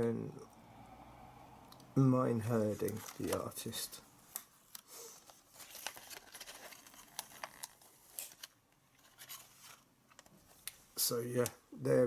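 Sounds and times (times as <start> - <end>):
packaging rustling and clicking: 2.8 - 3.6, 4.3 - 10.8.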